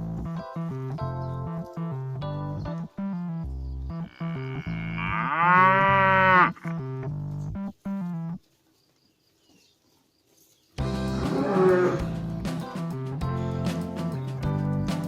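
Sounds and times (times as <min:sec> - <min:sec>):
light keyboard music: 0:00.0 - 0:04.4, 0:10.8 - 0:15.0
cow mooing: 0:03.9 - 0:07.1, 0:11.1 - 0:12.2.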